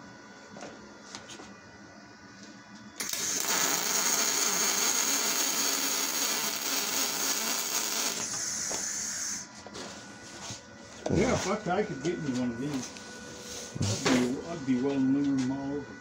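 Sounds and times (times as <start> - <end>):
welding arc hissing: 3.0 - 9.5.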